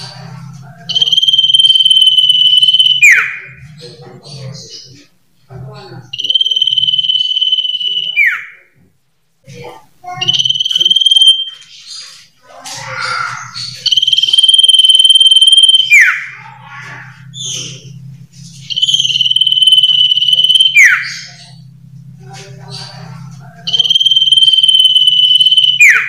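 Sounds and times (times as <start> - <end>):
bird whistling: 0.9 - 3.3, 6.2 - 8.5, 10.2 - 12.2, 13.6 - 16.3, 18.6 - 21.6, 23.7 - 26.0
scratchy bird chattering: 0.9 - 3.3, 10.2 - 21.6, 23.6 - 26.0.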